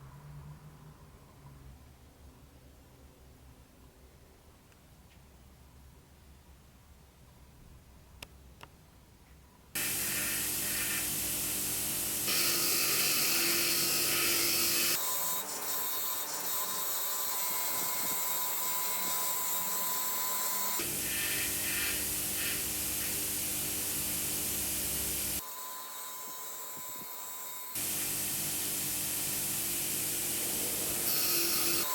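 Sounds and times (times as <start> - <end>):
power tool running: 9.8 - 31.9.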